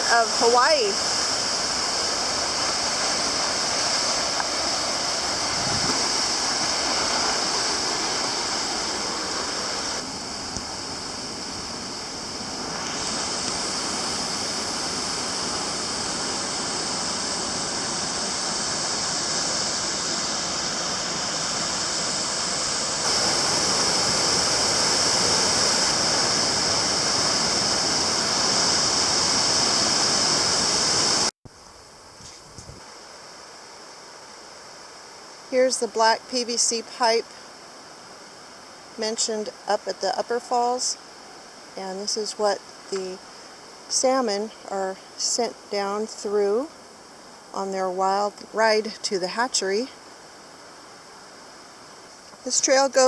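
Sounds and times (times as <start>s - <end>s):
waterfall rushing: 0.0s - 31.3s.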